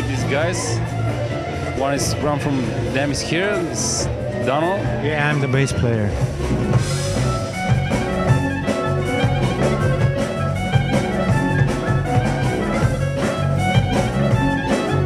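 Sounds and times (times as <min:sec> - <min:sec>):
drums: 0:00.0 - 0:15.0
stringed instruments melody: 0:00.0 - 0:15.0
repeating bass line: 0:06.1 - 0:15.0.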